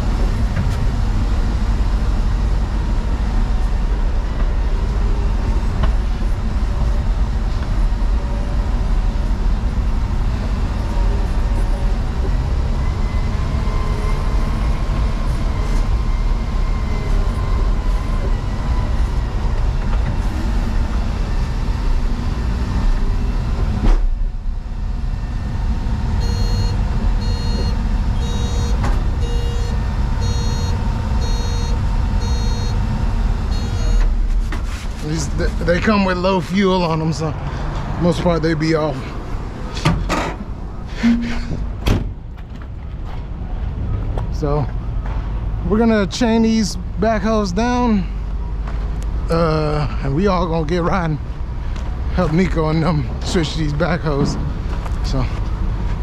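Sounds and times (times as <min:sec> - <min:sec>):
diesel engine running: 0:00.0 - 0:56.0
reversing alarm beeping: 0:26.2 - 0:34.1, 0:40.9 - 0:41.7.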